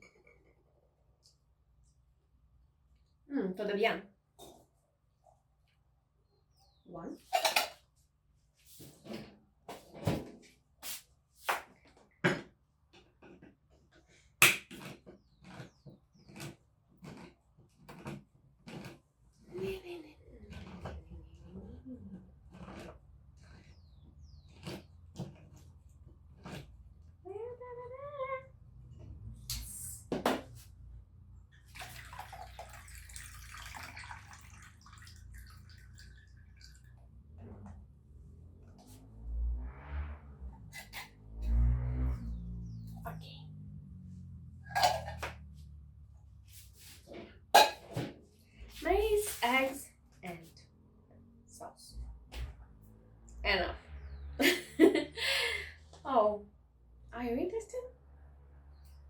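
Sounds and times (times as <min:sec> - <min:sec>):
kitchen utensils and dishes clinking: 0:07.2 - 0:07.8, 0:44.7 - 0:45.3, 0:47.6 - 0:48.0
water running from tap: 0:31.6 - 0:37.0.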